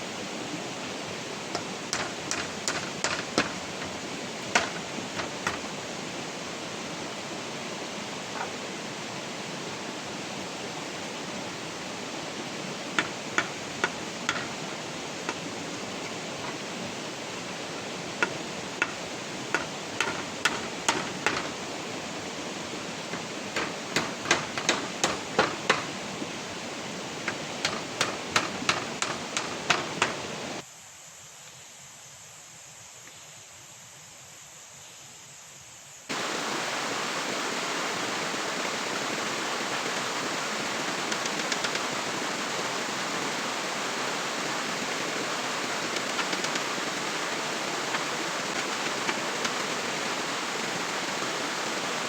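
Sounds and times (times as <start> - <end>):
rushing water: 0.0 - 30.6, 36.1 - 52.0
sharp knocking strikes: 1.5 - 5.7, 13.0 - 14.6, 18.2 - 21.6, 23.1 - 26.0, 27.3 - 30.2.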